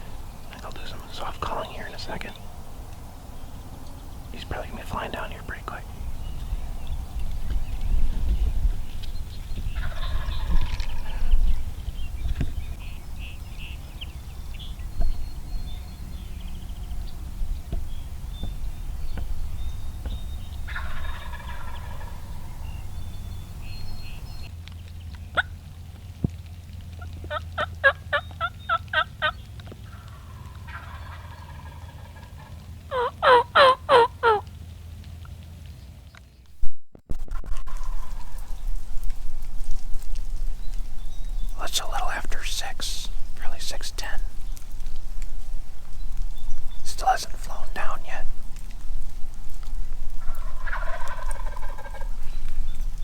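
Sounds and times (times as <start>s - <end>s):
turkey yelps: 9.8s - 10.8s, 20.7s - 22.5s, 27.2s - 34.5s, 50.2s - 52.2s
turkeys gobbling: 9.8s - 11.3s, 20.6s - 22.7s, 27.1s - 34.6s, 37.4s - 38.6s, 50.2s - 52.4s.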